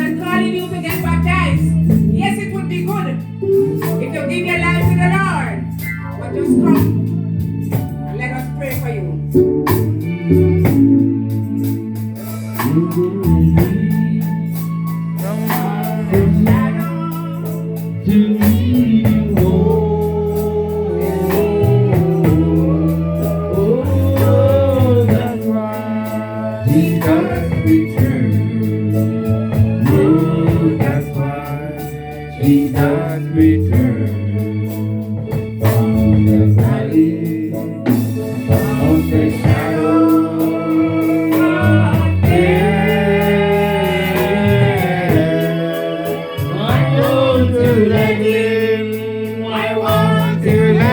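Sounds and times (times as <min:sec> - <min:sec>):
band playing gospel: 0:00.0 - 0:50.9
person singing: 0:12.0 - 0:50.9.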